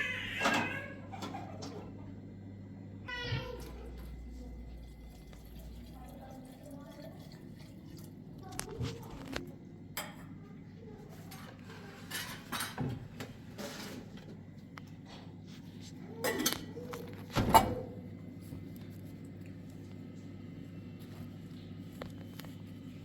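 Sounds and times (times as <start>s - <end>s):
dishes clinking and clattering: 11.3s - 13.9s, 16.2s - 17.8s.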